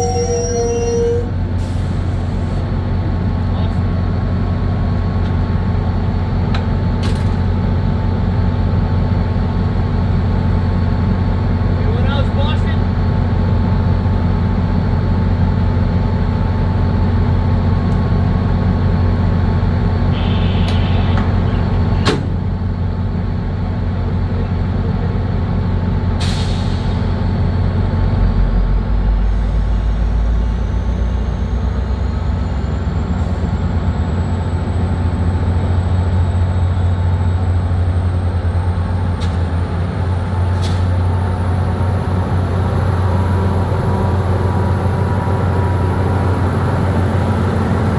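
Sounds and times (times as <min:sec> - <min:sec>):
diesel locomotive rumble: 0:00.0 - 0:47.9
air brake hiss: 0:01.6 - 0:02.6, 0:26.2 - 0:27.0, 0:40.5 - 0:40.9.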